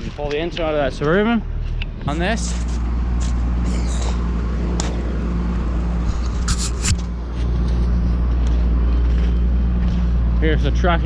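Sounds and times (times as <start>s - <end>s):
engine humming: 0.0s - 11.0s
short scrapes: 6.0s - 10.2s.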